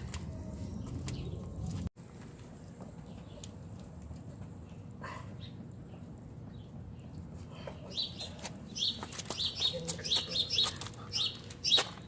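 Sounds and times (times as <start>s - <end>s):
small birds chirping: 4.6s - 12.0s.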